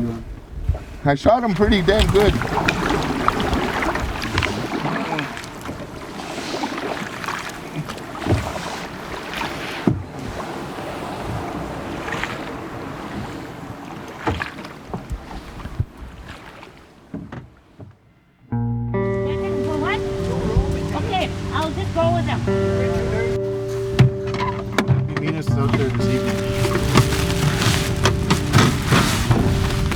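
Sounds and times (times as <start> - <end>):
water around a boat: 0.0 - 29.9
wind: 0.0 - 29.9
knocks and bumps: 23.7 - 29.9.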